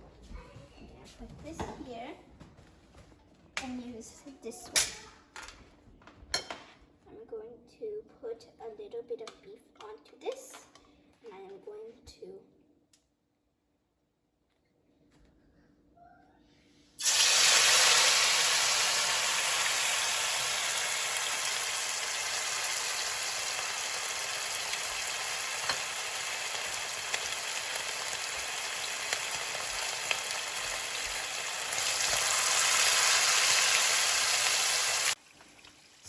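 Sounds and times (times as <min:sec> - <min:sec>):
meat sizzling in hot oil: 0:17.0 - 0:36.0.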